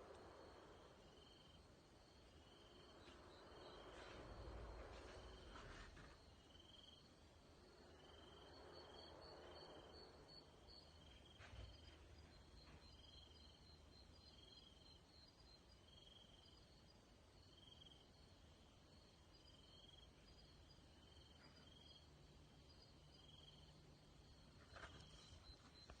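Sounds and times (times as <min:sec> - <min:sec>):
low hum: 0:00.0 - 0:14.2
faint low drone: 0:00.0 - 0:15.3
insects pulsing trill: 0:00.0 - 0:26.0
insects trilled chirps: 0:06.3 - 0:26.0.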